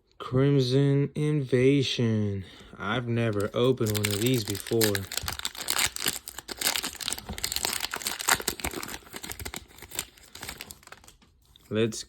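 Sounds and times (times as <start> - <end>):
foil wrapper crinkling and tearing: 3.2 - 11.7.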